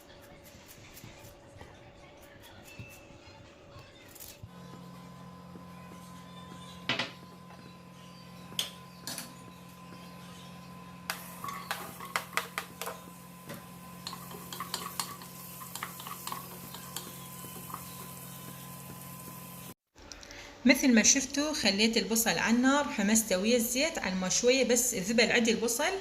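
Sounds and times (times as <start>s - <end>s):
steady low hum: 4.4s - 19.8s
knife and utensils clattering: 11.1s - 13.0s, 14.0s - 17.9s.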